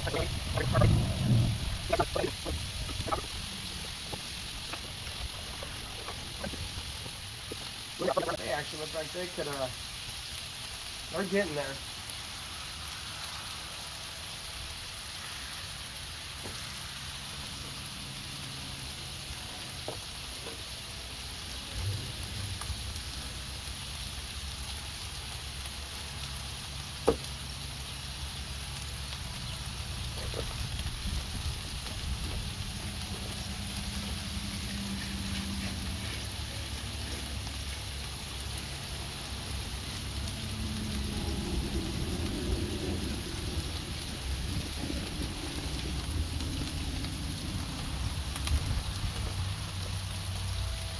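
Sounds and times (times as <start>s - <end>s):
low rumble: 0.0s - 8.4s, 29.3s - 50.2s
meat sizzling: 0.0s - 50.9s.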